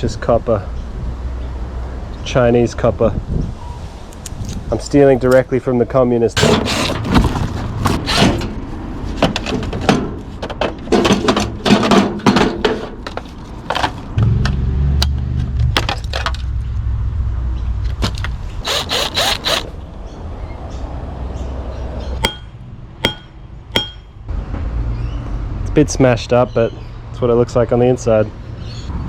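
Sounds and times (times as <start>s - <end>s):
hand tools knocking on metal: 9.2s - 13.9s, 22.2s - 24.1s.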